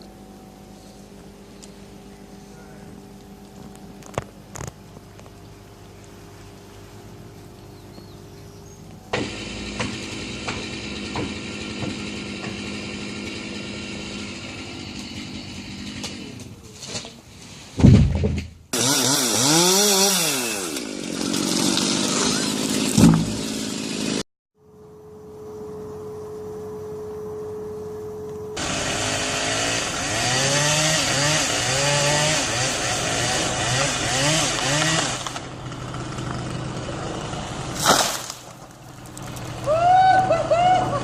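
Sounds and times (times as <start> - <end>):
steady single-pitched hum: 0.0 - 11.3, 24.6 - 28.7
chainsaw engines revving: 9.1 - 16.5, 18.7 - 24.2, 28.6 - 41.0.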